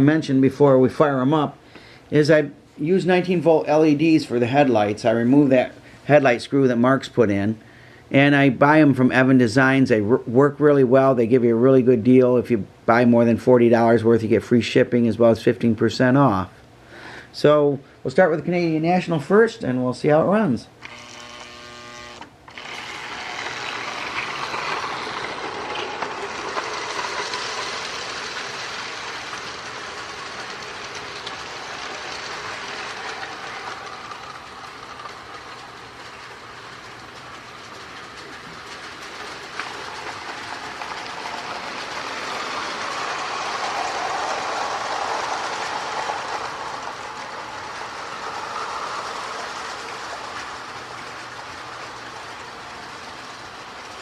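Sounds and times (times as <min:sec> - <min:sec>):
model train motor whirring: 0:20.8 - 0:54.0
wheels clicking over rails: 0:22.2 - 0:54.0.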